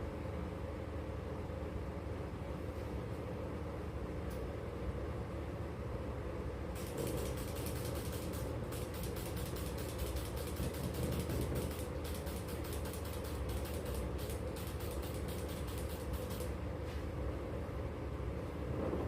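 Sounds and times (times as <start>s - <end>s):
steady low hum: 0.0s - 19.0s
rapid mechanical clicking: 6.8s - 16.6s.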